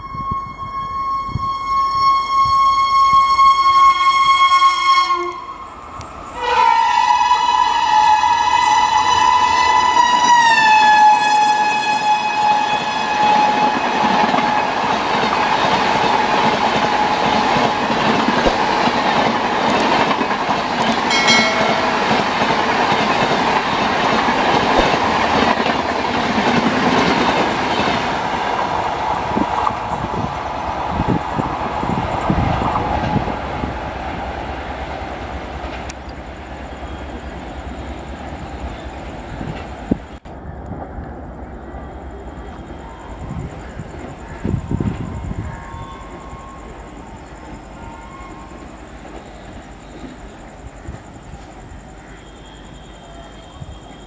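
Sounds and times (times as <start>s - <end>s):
locomotive horn: 0.0s - 18.4s, 21.1s - 25.7s
train coaches clattering on rails: 4.1s - 54.0s.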